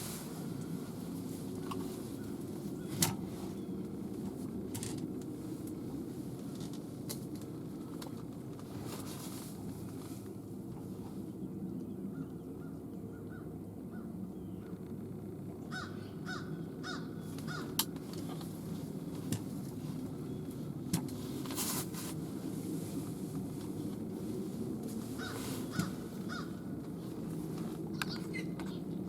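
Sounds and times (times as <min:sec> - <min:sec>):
crows cawing: 0:15.7 - 0:17.8, 0:25.2 - 0:26.7.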